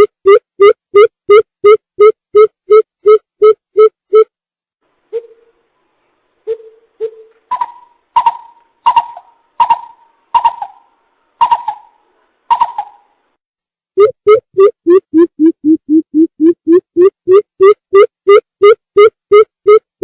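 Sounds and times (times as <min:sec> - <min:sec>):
bird call low hoots and echoing notes: 0:05.1 - 0:05.6, 0:06.5 - 0:13.1.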